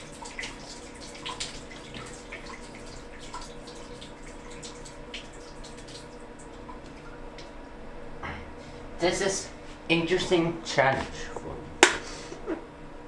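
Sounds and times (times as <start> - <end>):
water dripping into a sink: 0.0 - 7.8
steady hum: 0.0 - 13.0.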